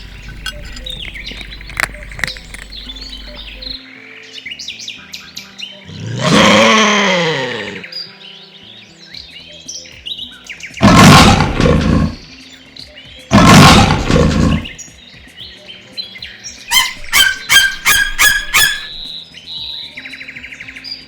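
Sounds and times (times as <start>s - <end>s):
birds chirping: 0.0s - 21.0s
large animal roaring: 5.9s - 7.9s, 10.8s - 12.3s, 13.3s - 14.8s.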